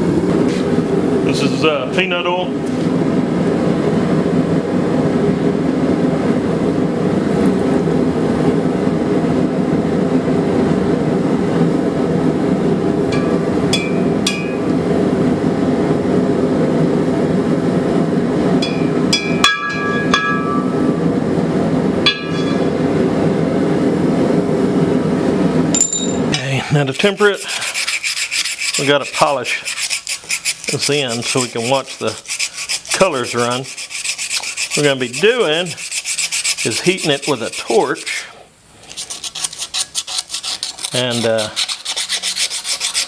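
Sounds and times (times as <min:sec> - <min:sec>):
steel clinking on steel: 0:25.8 - 0:26.4.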